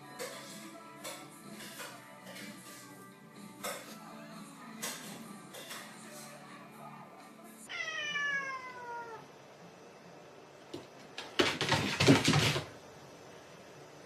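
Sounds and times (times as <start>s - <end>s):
cat meowing: 7.7s - 9.3s.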